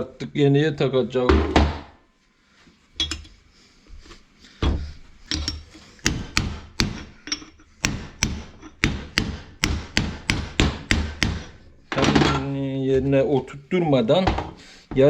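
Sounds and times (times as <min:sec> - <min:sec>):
hammer strikes on metal: 0:04.6 - 0:12.5.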